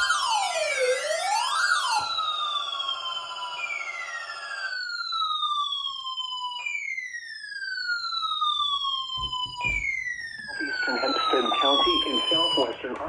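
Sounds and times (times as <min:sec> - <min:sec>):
falling electronic siren tone: 0:00.0 - 0:13.0
warbling siren: 0:00.0 - 0:13.0.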